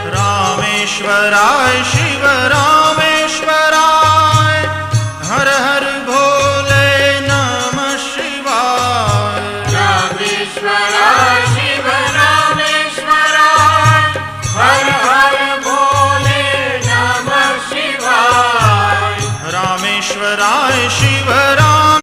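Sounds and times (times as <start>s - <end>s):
bells jingling: 0.0s - 22.0s
deep drum beat: 8.9s - 17.5s.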